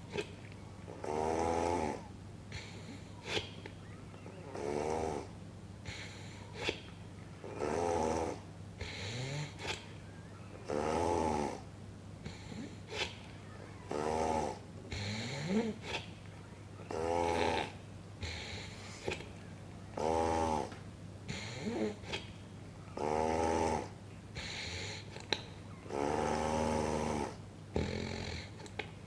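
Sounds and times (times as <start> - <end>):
loud buzzing snores: 0.9 - 3.0, 4.4 - 6.4, 7.4 - 9.8, 10.7 - 13.1, 13.9 - 16.0, 16.9 - 19.1, 20.0 - 22.2, 23.0 - 25.1, 25.9 - 28.7.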